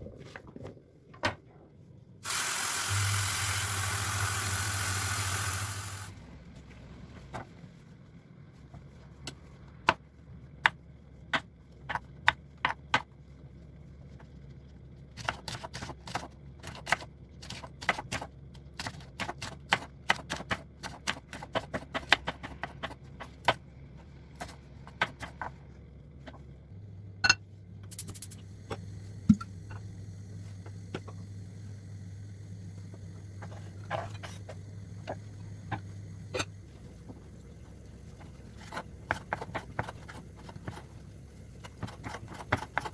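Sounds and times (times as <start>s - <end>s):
low steady hum: 0.0s - 42.9s.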